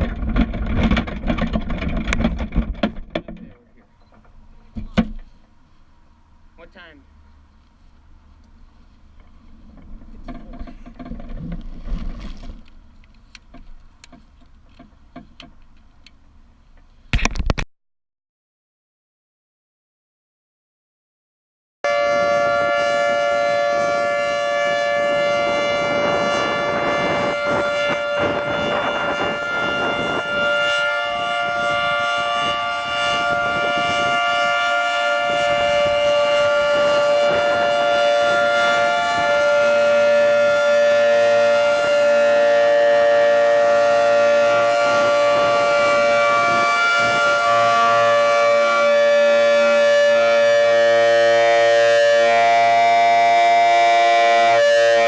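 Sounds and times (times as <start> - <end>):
dual-tone warning siren: 21.9 - 55.0.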